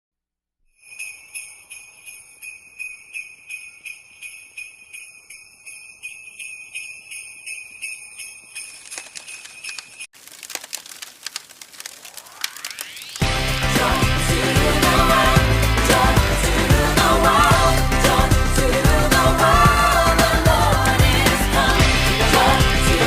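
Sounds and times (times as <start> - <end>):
sleigh bells jingling: 0.7 - 11.3, 12.8 - 23.0
chiming strokes with rising sweep: 12.3 - 23.0
music: 13.2 - 23.0.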